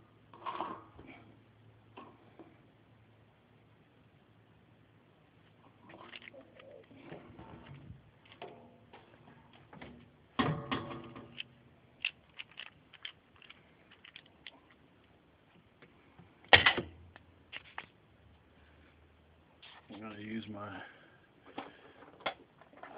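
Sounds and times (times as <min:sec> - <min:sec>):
plastic parts clicking and knocking: 0:05.9 - 0:15.9, 0:16.5 - 0:18.0.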